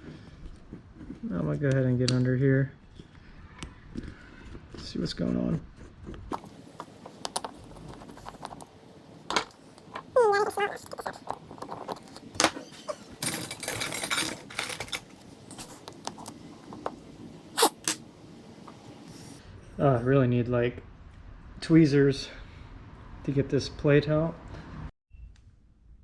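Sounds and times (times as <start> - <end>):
metal parts clicking and tapping: 6.3 - 17.1.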